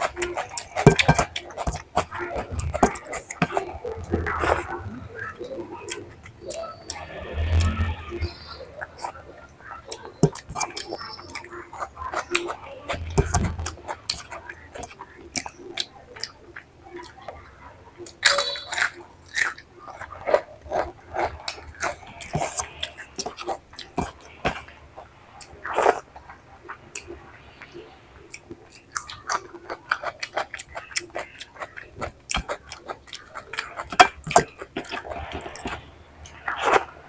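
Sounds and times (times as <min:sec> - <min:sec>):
person chewing and mouth smacking: 0:00.0 - 0:37.0
crunchy bites: 0:28.4 - 0:37.0.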